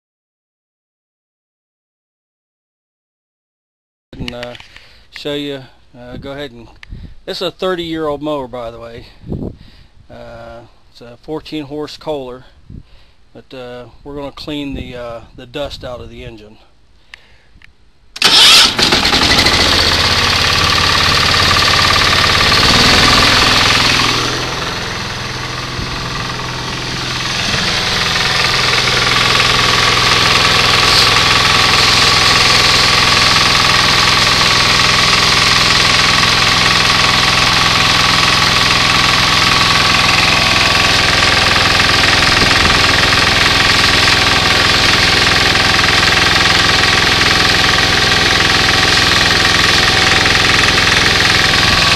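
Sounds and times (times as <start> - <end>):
riding mower engine running: 18.2 - 51.9.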